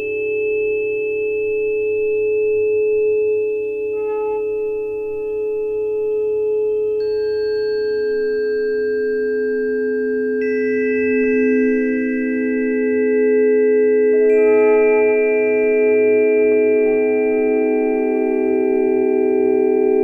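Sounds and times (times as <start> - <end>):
tuning forks ringing: 0.0 - 20.0.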